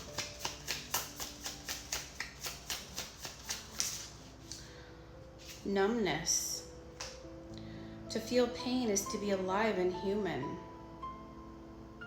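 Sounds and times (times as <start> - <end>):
cards being shuffled: 0.0 - 4.6, 5.4 - 5.7.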